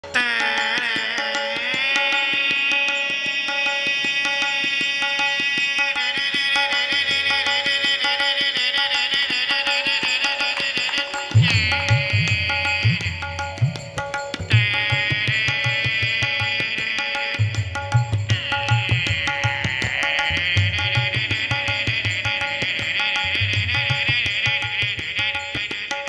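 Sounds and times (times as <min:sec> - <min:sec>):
reedy wind instrument melody: 0:00.0 - 0:26.0
hand drum rhythm: 0:10.6 - 0:25.6.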